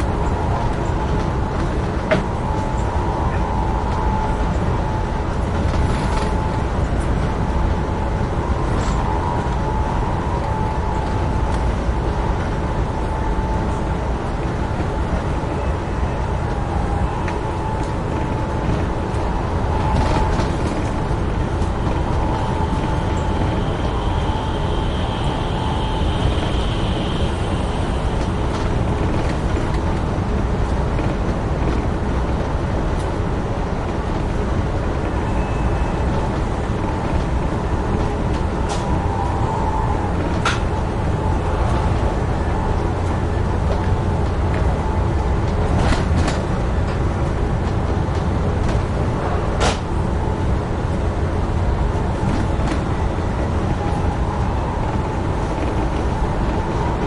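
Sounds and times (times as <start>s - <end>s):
higher whine: 0.0s - 29.6s
train wheels rumbling on rail: 0.0s - 57.0s
level whine: 6.3s - 29.4s.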